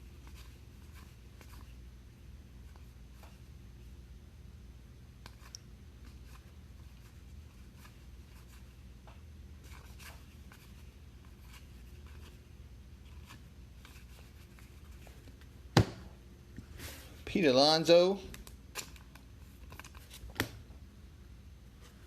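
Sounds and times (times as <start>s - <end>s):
low room hum: 0.0s - 22.0s
cards being flipped: 18.3s - 20.6s.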